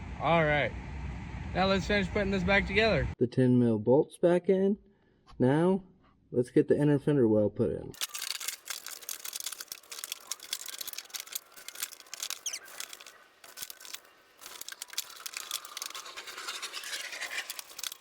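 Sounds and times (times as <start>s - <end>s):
plastic scraping and crinkling: 8.0s - 18.0s.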